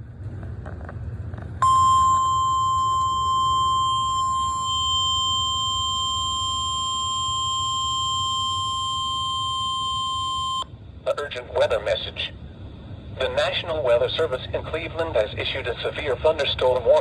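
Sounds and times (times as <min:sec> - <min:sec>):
low receiver hum: 0:00.0 - 0:17.0
steady warning alarm tone: 0:01.6 - 0:10.8.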